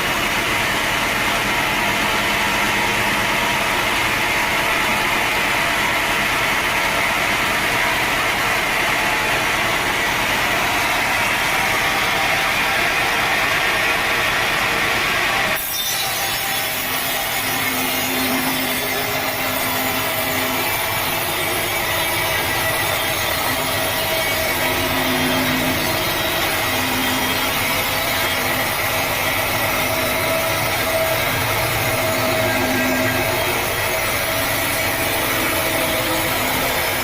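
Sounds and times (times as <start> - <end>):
saw blade cutting through log: 15.6 - 37.0.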